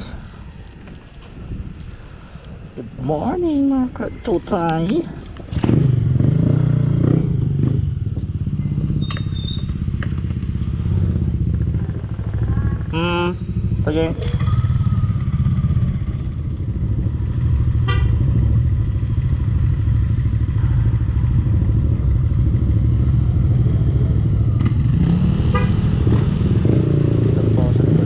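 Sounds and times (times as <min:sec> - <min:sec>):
motorcycle engine running: 0:05.5 - 0:28.0.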